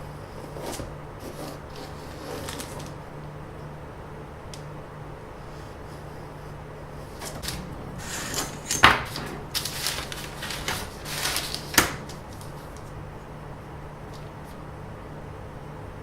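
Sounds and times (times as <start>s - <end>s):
steady low hum: 0.0s - 16.0s
handling rustling and scraping: 0.4s - 3.0s, 7.1s - 13.0s.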